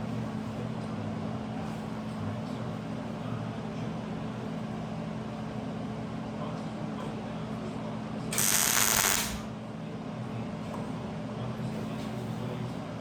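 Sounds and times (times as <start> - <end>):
steady low hum: 8.2 - 11.4
hissing crackling burst: 8.4 - 9.4.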